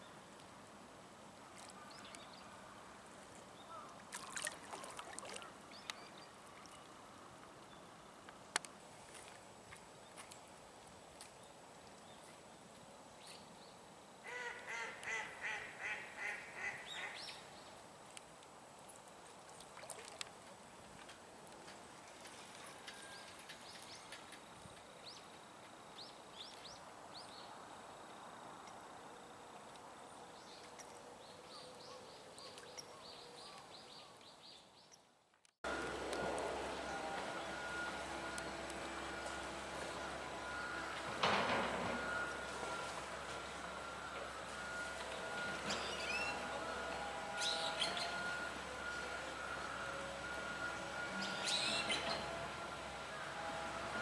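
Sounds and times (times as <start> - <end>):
outdoor ambience: 0.0 - 54.0
steady background hum: 0.1 - 32.5, 35.6 - 54.0
bird harsh quacking calls: 14.3 - 17.2.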